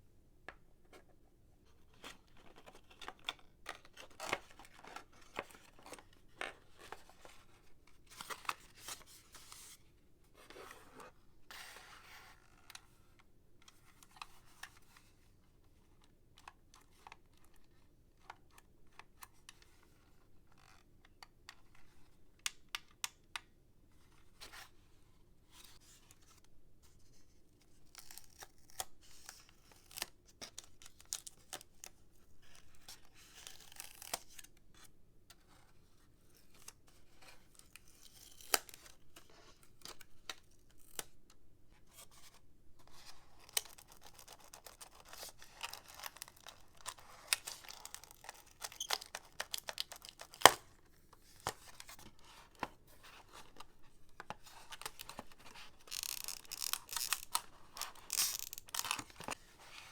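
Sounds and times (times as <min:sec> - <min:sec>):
cardboard and plastic rustling: 0:42.9 - 0:59.9.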